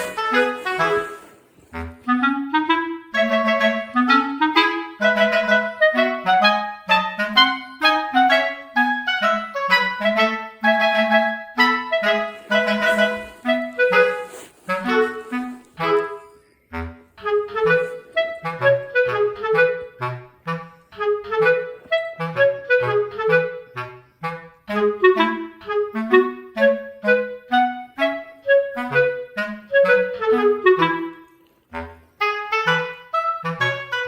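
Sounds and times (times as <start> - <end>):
woodwind melody: 0.0 - 34.0
walking bass line: 11.8 - 16.2.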